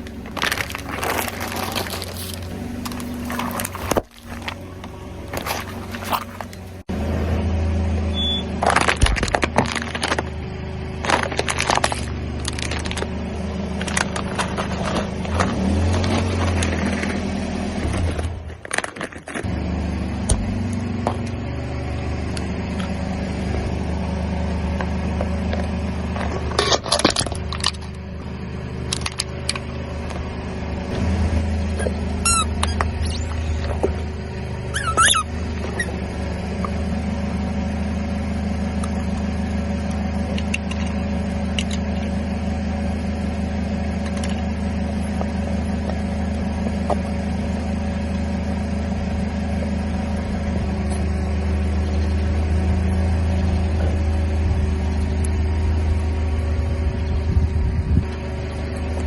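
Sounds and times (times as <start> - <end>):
tyre crushing objects: 0.0 - 6.9
car engine running: 0.0 - 59.0
short high squeaks: 31.8 - 33.6, 34.7 - 36.0.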